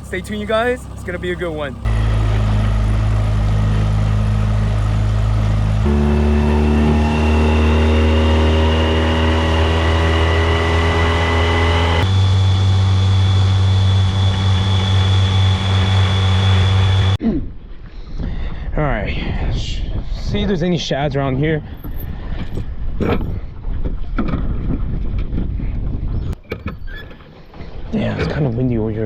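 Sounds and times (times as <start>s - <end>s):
boat engine running at speed: 0.0s - 17.2s.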